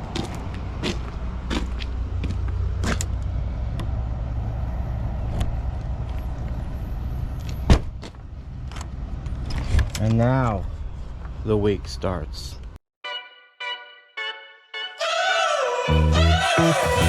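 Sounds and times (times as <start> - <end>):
vehicle engine rumbling: 0.0 - 11.5.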